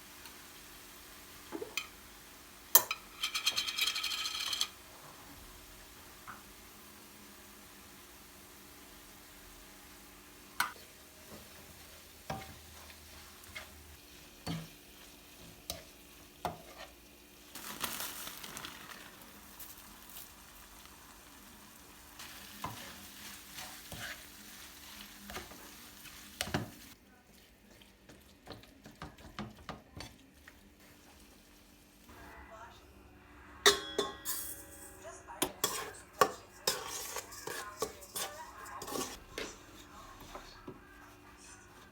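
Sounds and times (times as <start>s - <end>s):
food sizzling in frying pan: 0.0s - 32.4s
utensil tapping pan: 35.4s - 40.8s.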